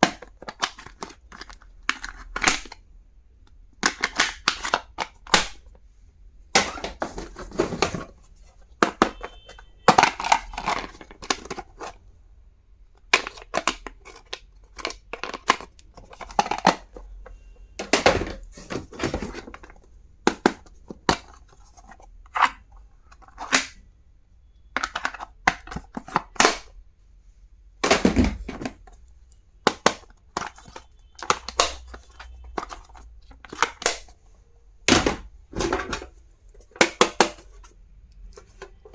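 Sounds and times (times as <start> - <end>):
plastic clicks and knocks: 29.6 - 34.1, 34.9 - 38.9.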